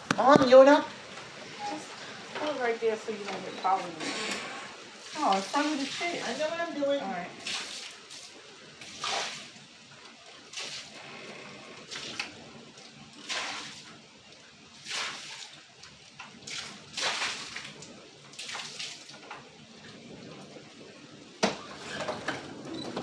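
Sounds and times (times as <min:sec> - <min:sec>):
heavy rain hiss: 0:00.0 - 0:23.0
water splashing: 0:04.7 - 0:11.0, 0:11.8 - 0:20.1.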